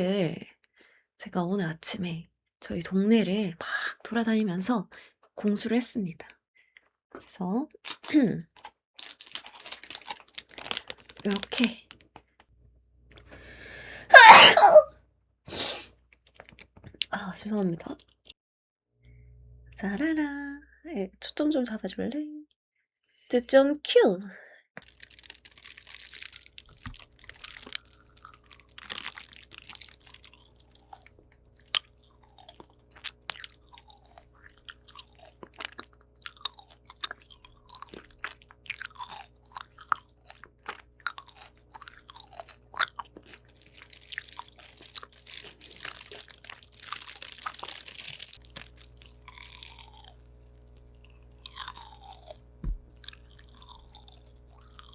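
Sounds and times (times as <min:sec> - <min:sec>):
cookie crunching: 0:07.9 - 0:12.3, 0:24.8 - 0:54.9.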